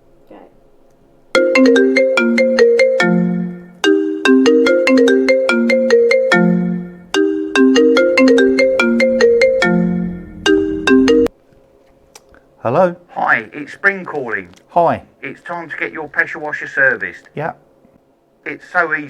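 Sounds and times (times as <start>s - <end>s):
mobile phone ringtone melody: 1.4s - 11.3s.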